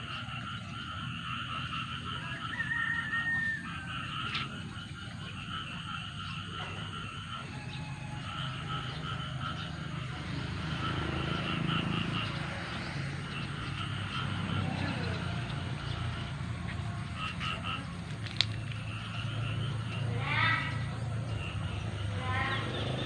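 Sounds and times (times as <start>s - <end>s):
chorus of frogs calling: 0.0s - 23.0s.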